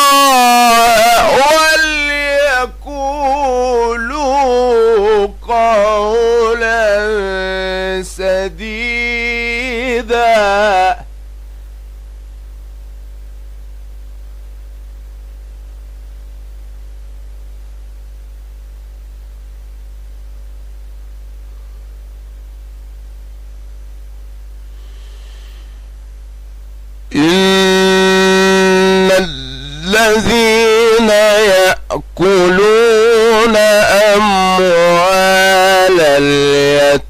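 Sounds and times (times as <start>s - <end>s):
man reciting melodically: 0.0s - 11.1s, 27.1s - 37.0s
low hum: 0.0s - 37.0s.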